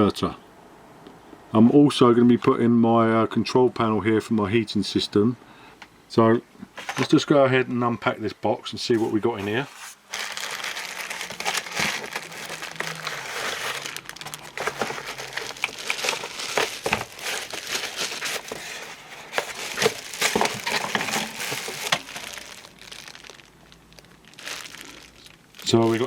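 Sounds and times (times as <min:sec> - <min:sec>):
plastic wrap crinkling: 0:09.0 - 0:26.0
sharp crackles: 0:21.3 - 0:26.0.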